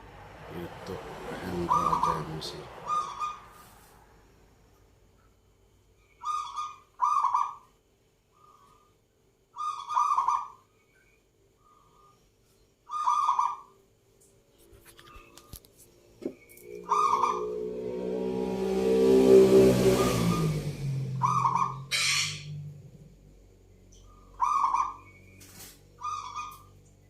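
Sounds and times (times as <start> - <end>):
dove cooing: 1.3 - 3.4, 16.7 - 17.6, 21.2 - 22.2
droning sound: 16.4 - 24.2.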